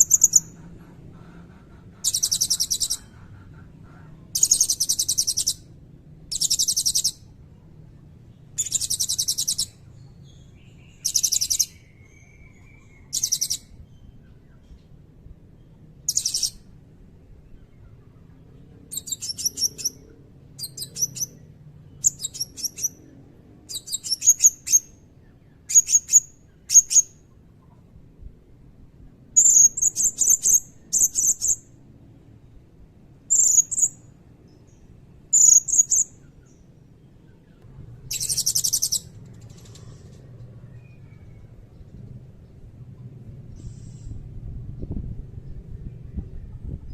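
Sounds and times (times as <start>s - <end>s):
parrot high-pitched trilled calls: 2.0s - 3.1s, 8.6s - 9.8s, 38.1s - 39.1s.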